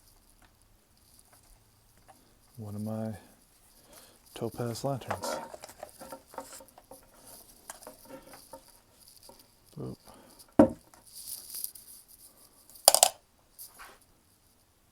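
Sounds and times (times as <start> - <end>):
light rustling: 0.4 - 12.3
dull thump: 10.6 - 10.8.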